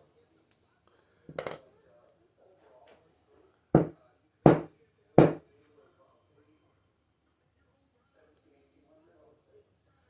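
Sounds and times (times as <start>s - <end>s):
metal part knocking on hard surface: 1.3s - 1.6s, 4.5s - 5.4s.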